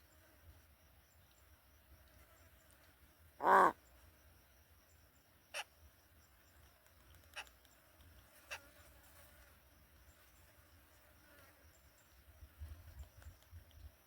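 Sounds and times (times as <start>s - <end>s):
crow cawing: 3.4s - 3.8s.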